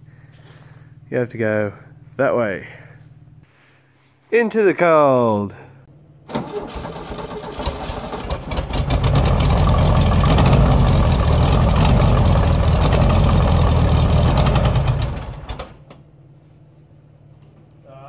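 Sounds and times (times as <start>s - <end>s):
car engine running: 8.3s - 16.4s.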